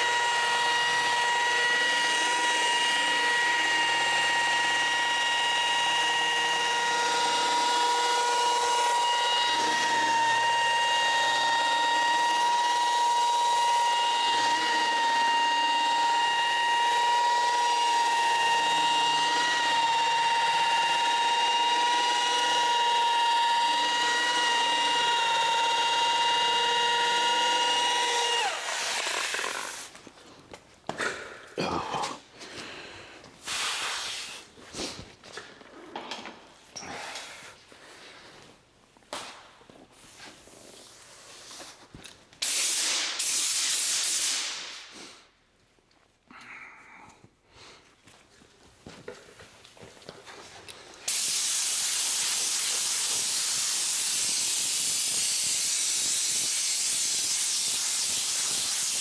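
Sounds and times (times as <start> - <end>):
electric polisher whining: 0.0 - 30.0, 51.1 - 59.0.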